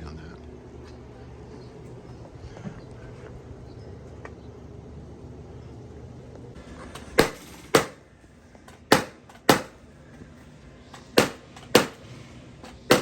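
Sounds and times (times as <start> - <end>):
sharp ringing knocks: 7.2 - 8.0, 8.8 - 9.8, 11.0 - 12.0, 12.7 - 13.0.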